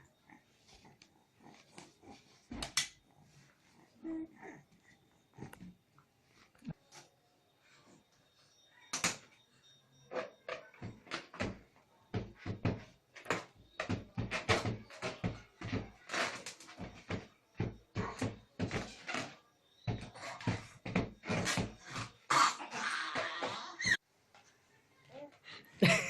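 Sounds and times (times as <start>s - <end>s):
child banging on a door: 10.8s - 19.1s.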